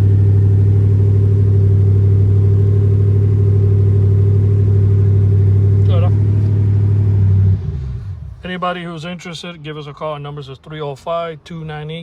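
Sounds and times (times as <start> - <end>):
truck engine idling: 0.0 - 8.6.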